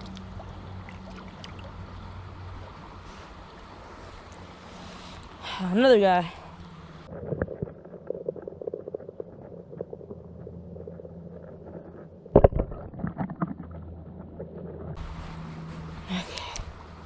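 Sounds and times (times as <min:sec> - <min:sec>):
muffled low rumbling: 0:07.0 - 0:17.0.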